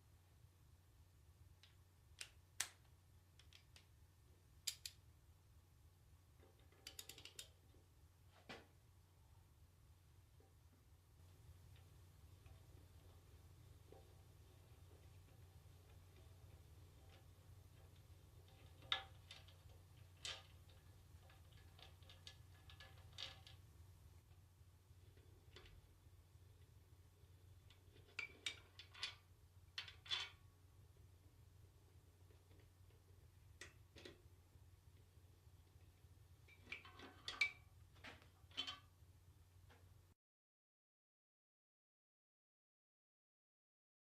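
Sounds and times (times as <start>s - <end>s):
faint steady hum: 0.0s - 40.2s
metal parts and tools clicking: 4.6s - 5.0s, 6.5s - 7.6s.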